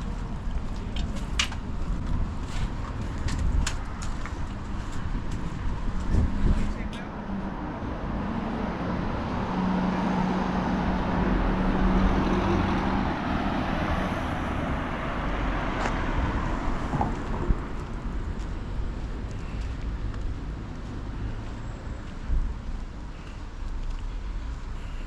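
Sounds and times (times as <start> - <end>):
car passing: 5.5 - 23.6.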